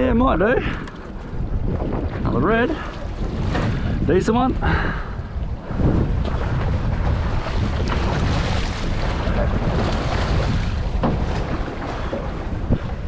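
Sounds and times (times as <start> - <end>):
water noise: 0.0 - 13.0
wind buffeting microphone: 0.0 - 13.0.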